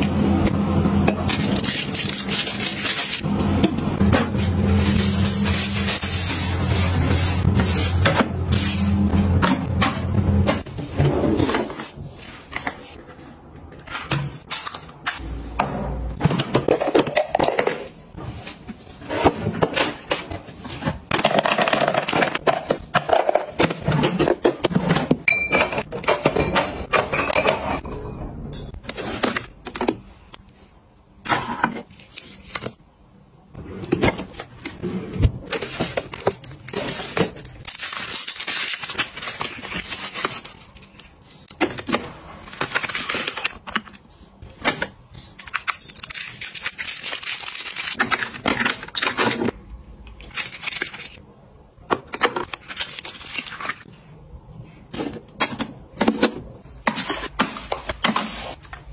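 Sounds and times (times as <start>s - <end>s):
packaging rustling: 1.3s - 3.2s, 35.4s - 44.6s, 45.3s - 49.4s, 52.2s - 53.9s.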